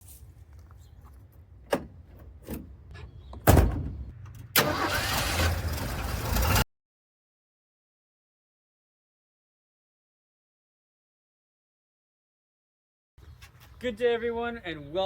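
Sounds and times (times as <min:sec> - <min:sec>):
engine clicks: 0:04.1 - 0:06.6
engine cranking: 0:04.2 - 0:06.6.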